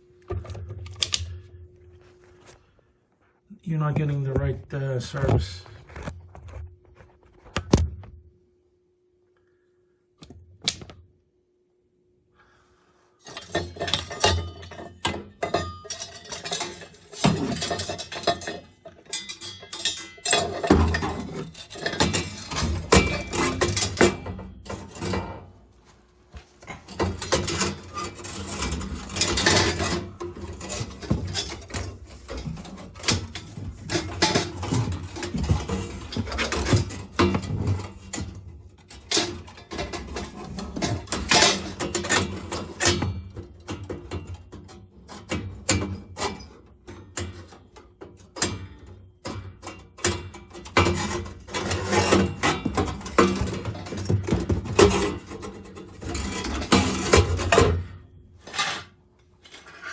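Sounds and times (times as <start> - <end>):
metal parts clinking and knocking: 13.2 - 25.4, 26.7 - 58.8.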